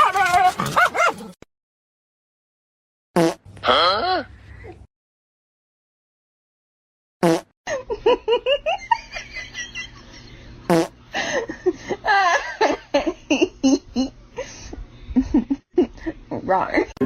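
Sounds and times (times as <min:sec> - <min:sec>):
fart-like blasts: 0:03.2 - 0:03.5, 0:07.2 - 0:07.6, 0:10.7 - 0:11.0
people laughing and giggling: 0:11.2 - 0:16.1.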